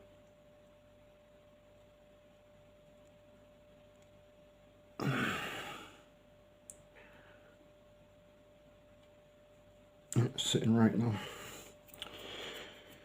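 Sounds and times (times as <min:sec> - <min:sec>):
faint steady hum: 0:00.0 - 0:13.0
person sighing: 0:05.0 - 0:06.1.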